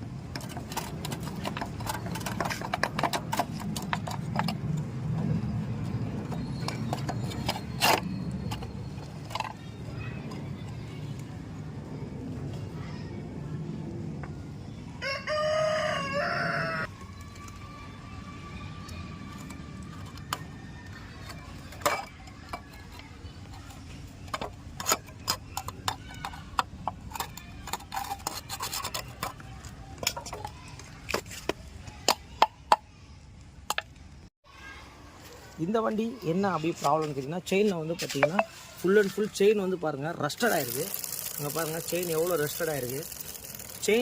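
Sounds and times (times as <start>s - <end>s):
rooster crowing: 15.0s - 16.9s.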